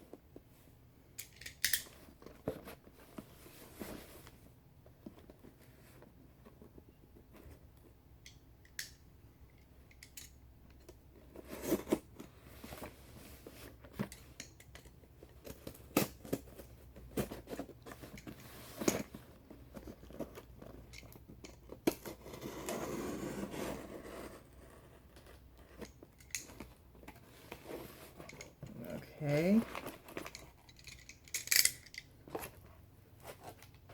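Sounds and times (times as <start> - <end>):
packing rustling and crinkling: 24.7 - 31.4.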